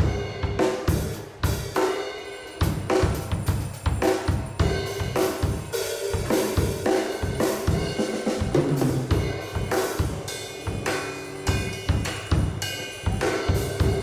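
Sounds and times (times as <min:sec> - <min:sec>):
drum kit groove: 0:00.0 - 0:14.0.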